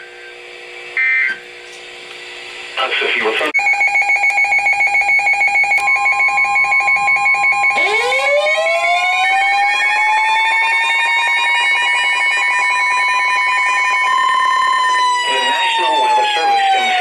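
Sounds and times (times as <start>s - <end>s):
electronic alarm beeping rapidly: 3.6s - 9.1s
warning siren wailing: 3.6s - 17.0s.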